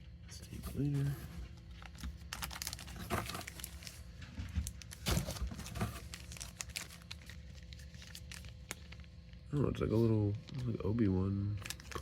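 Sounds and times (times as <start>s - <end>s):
plastic and paper crinkling: 0.5s - 10.9s, 11.6s - 12.0s.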